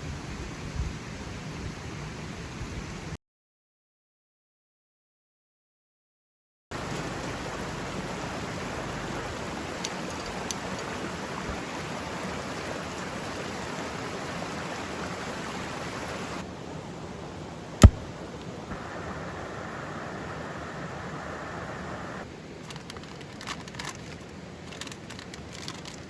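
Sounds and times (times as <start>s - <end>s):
loud sharp click: 17.8s - 18.0s.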